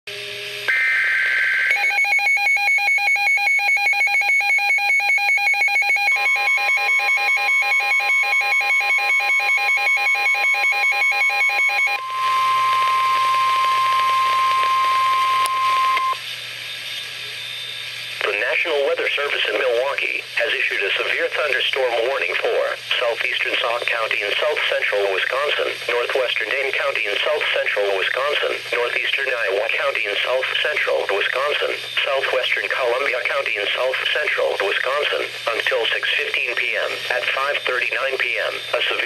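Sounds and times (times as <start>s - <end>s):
rapid pulsing alarm beeps: 0.7s - 17.9s, 26.3s - 39.0s
high data tones: 0.7s - 19.4s, 20.4s - 39.0s
steady warning alarm tone: 0.7s - 20.6s, 23.0s - 39.0s
radio hiss: 17.0s - 39.0s.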